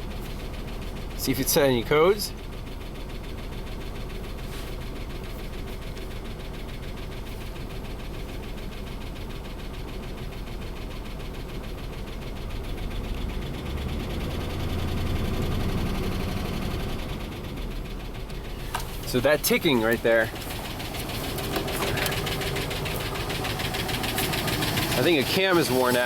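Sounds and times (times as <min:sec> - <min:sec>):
engine idling with misfire: 0:00.0 - 0:26.0.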